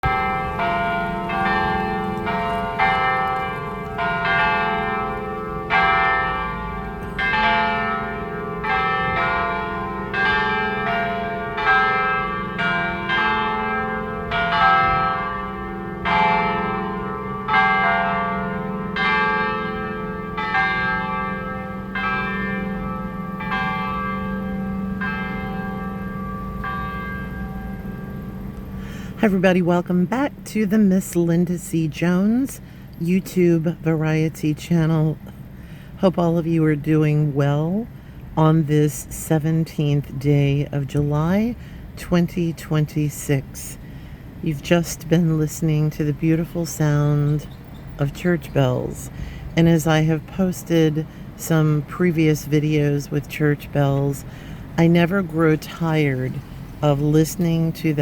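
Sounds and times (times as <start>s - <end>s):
church bells ringing: 0.0s - 58.0s.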